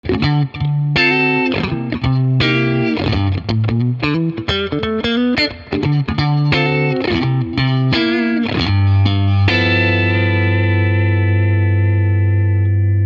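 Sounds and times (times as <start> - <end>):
electric guitar sustained chords: 0.0 - 13.0.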